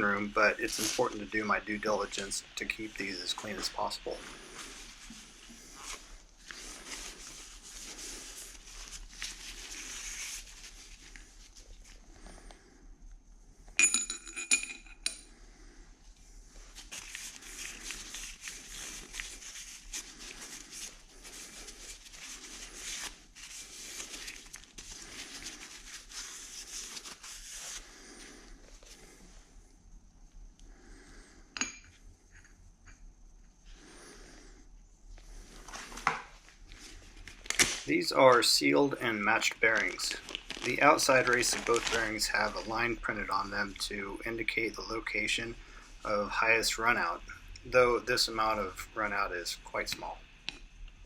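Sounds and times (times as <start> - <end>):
paper wipes rustling: 0.0 - 12.7, 16.4 - 29.6, 35.2 - 50.2
metal part clinking: 13.8 - 15.2.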